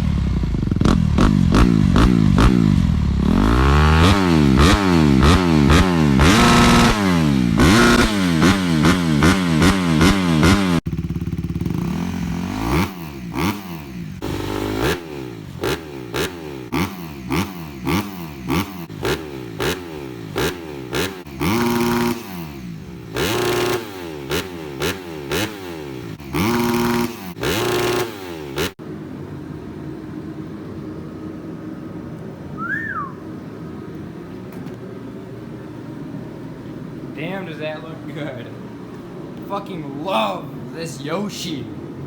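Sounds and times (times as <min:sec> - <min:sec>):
dirt bike engine revving: 0:00.0 - 0:28.8.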